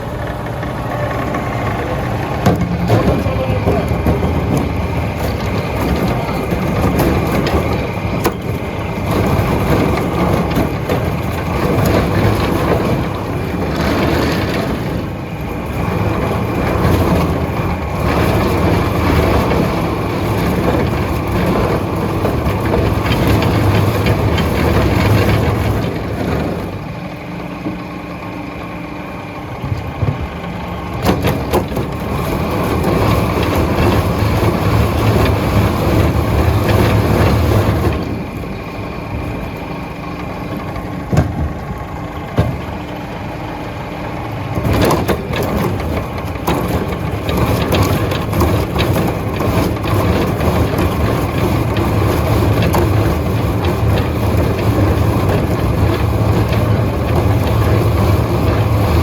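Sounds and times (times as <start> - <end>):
log peeling machine grinding wood: 0.0 - 59.0
sharp knocks: 41.1 - 42.8.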